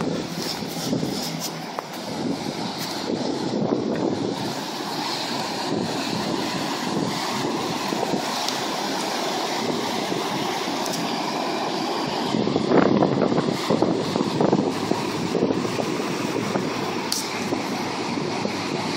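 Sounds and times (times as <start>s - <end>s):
river rushing: 0.0s - 18.9s
wind buffeting microphone: 0.0s - 18.9s.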